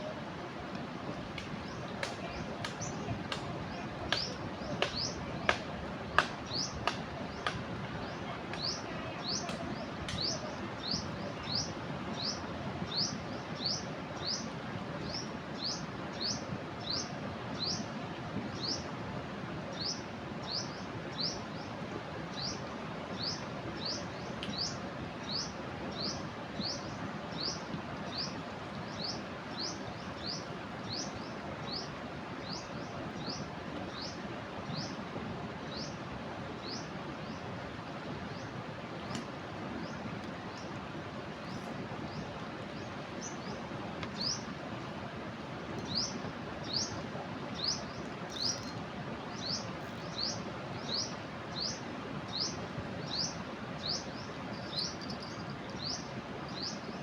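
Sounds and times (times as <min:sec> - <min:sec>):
river rushing: 0:00.0 - 0:57.0
bird chirping: 0:47.6 - 0:56.0.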